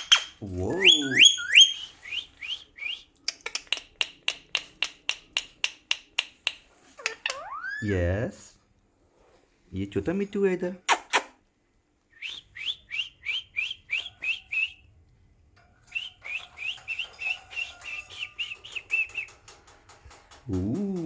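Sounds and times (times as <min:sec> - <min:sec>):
parrot chirping: 0:00.0 - 0:07.9.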